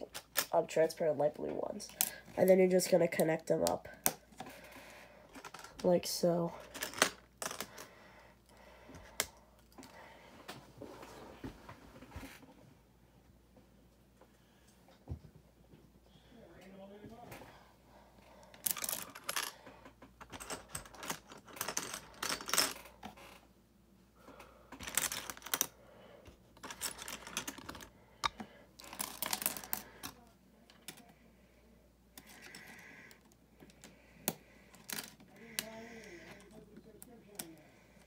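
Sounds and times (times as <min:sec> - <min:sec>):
plastic bricks clicking and rattling: 0:18.5 - 0:19.6, 0:20.2 - 0:23.2, 0:24.8 - 0:25.7, 0:26.6 - 0:30.2.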